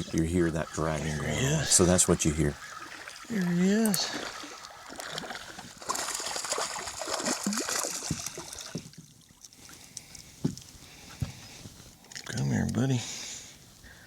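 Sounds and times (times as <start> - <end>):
water splashing and trickling: 0.0 - 10.4.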